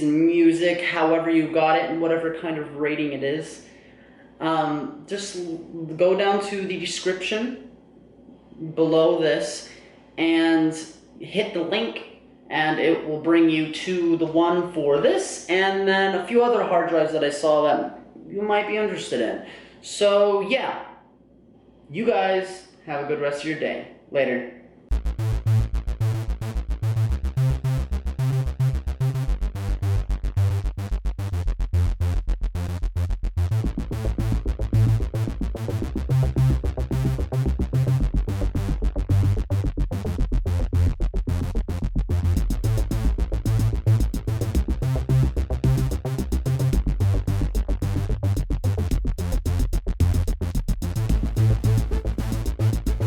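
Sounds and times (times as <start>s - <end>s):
electronic music with drum machine: 24.9s - 53.0s.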